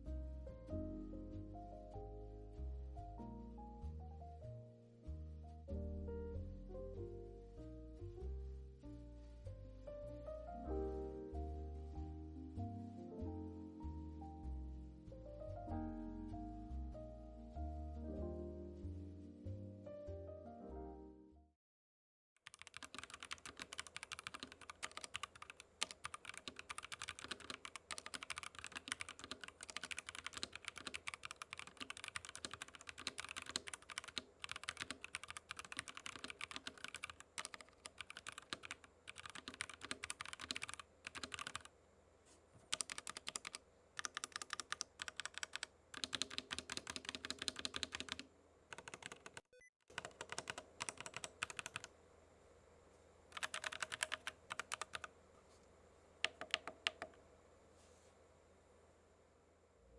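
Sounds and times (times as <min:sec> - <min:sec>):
mechanical keyboard typing: 0:22.4 - 0:41.7, 0:42.7 - 0:51.9, 0:53.3 - 0:55.1, 0:56.2 - 0:57.2.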